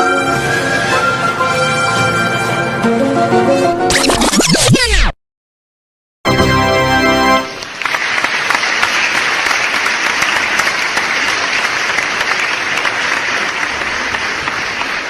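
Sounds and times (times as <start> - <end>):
crowd applause: 7.4 - 15.0.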